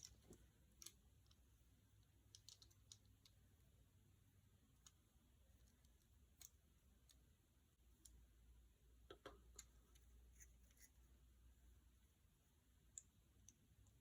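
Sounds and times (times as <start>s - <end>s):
plastic parts clicking: 2.3s - 3.4s.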